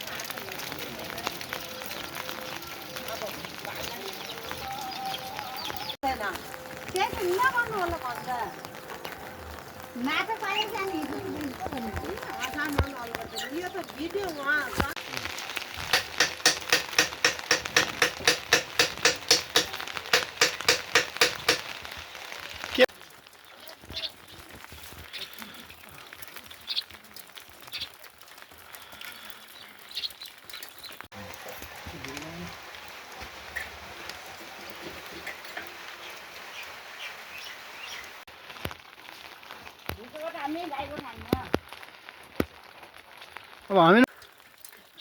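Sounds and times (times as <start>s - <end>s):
steady rain: 0.0s - 45.0s
rapid ringing knocks: 15.9s - 21.7s.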